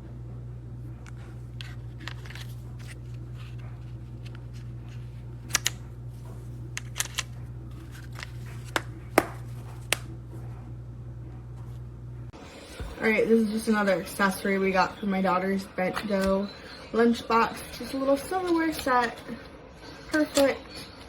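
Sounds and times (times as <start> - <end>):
steady low hum: 0.0 - 21.0
plastic utensils clicking: 1.6 - 5.8, 6.8 - 10.0.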